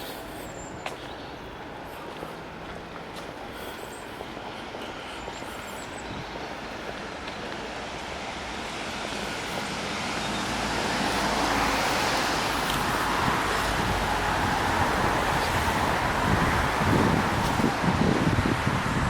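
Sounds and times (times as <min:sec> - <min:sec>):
road traffic: 0:00.0 - 0:19.0
vehicle approaching: 0:05.3 - 0:19.0.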